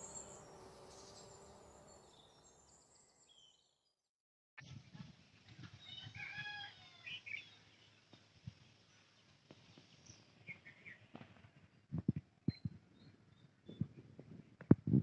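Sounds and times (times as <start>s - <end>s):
birds chirping and whistling: 0.0s - 3.6s
rooster crowing: 5.9s - 7.2s.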